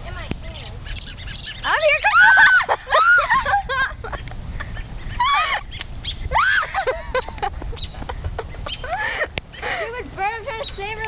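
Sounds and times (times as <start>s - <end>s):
bird squawking: 0.5s - 2.4s, 4.8s - 6.8s, 7.8s - 8.0s, 8.6s - 8.9s, 10.6s - 10.9s.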